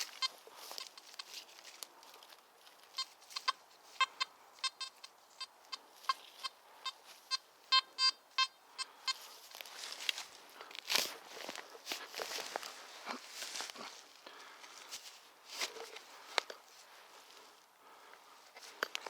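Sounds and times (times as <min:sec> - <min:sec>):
metal detector beeping: 0:00.0 - 0:01.3, 0:02.9 - 0:09.5
faint rustling of forest floor: 0:00.0 - 0:19.0.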